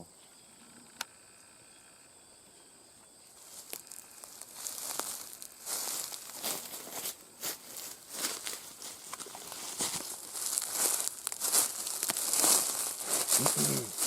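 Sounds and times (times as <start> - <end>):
high insect trill: 0.0 - 14.0
footsteps crunching through dry undergrowth: 3.3 - 14.0.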